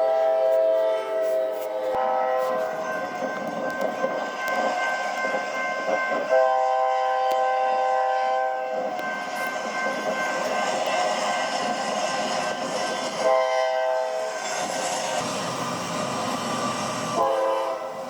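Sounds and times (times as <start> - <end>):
train horn chord: 0.0 - 3.0, 6.3 - 8.8, 13.2 - 14.3, 17.2 - 18.0
moving train noise: 0.0 - 18.0.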